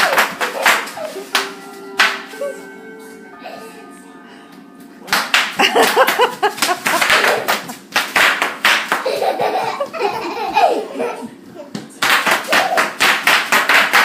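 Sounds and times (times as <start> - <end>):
child laughing: 0.0 - 1.4, 2.3 - 2.7, 5.6 - 7.9, 8.9 - 11.7.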